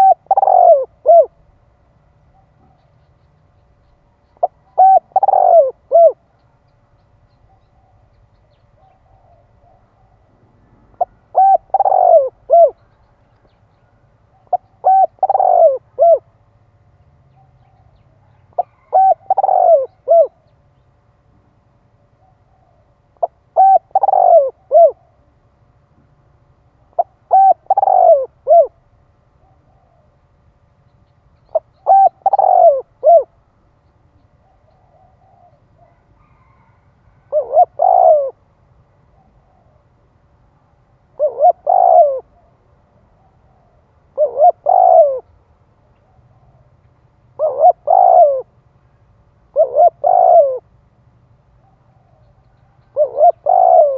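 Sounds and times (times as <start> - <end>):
dove cooing: 0.0 - 1.6, 3.8 - 6.5, 7.3 - 16.5, 17.3 - 20.6, 22.2 - 25.4, 26.8 - 30.3, 31.4 - 33.4, 34.4 - 40.0, 40.6 - 48.6, 49.4 - 50.8, 51.6 - 53.9.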